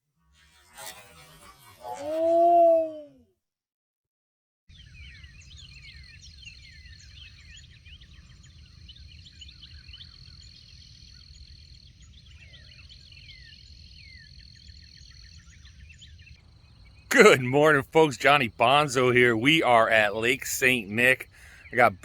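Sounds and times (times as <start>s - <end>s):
birds chirping: 4.7s - 22.0s.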